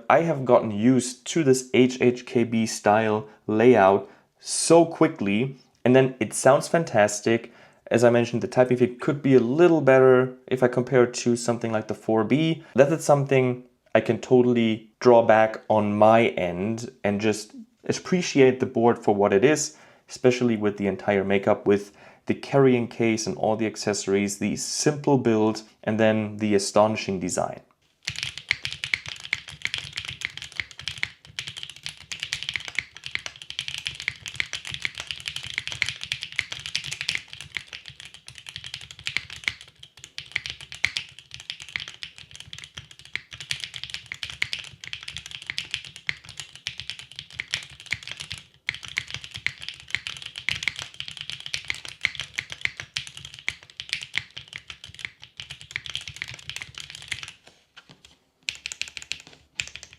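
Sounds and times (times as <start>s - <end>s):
mechanical keyboard typing: 28.0s - 57.4s, 58.0s - 59.9s.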